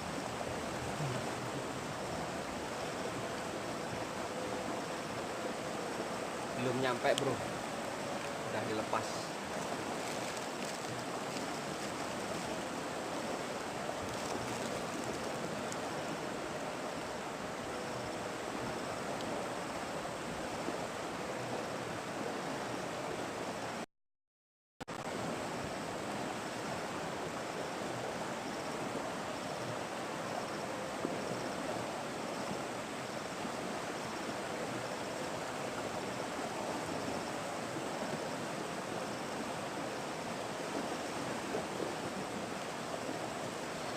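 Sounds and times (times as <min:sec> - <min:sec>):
river water flowing: 0:00.0 - 0:23.8, 0:24.9 - 0:43.9.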